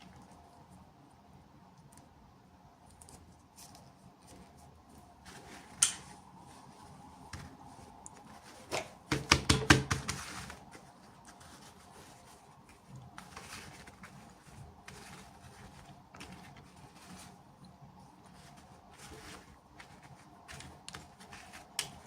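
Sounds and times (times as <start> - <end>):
plastic packaging rustling: 9.8 - 22.0.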